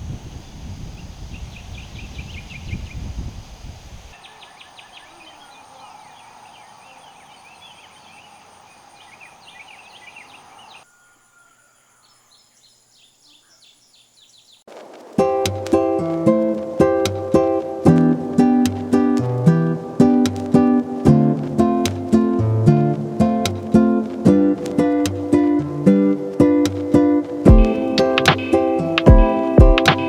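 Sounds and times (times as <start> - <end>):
wind rumbling on microphone: 0.0 - 10.8
wild birds chirping: 0.0 - 15.2, 21.2 - 30.0.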